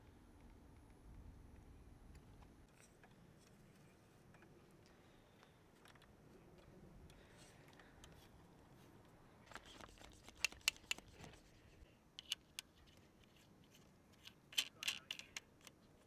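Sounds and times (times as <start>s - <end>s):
hand tools clicking and clinking: 9.6s - 11.3s, 14.2s - 15.7s.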